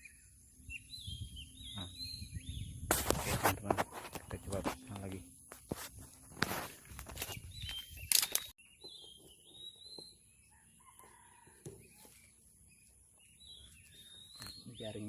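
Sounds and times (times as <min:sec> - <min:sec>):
birds calling high notes: 0:00.0 - 0:02.9, 0:12.7 - 0:15.0
rustling and handling clicks: 0:06.4 - 0:08.5.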